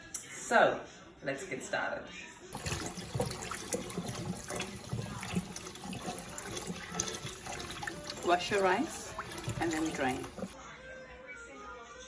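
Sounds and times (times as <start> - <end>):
water running from tap: 2.5 - 10.6
water splashing: 2.5 - 10.6.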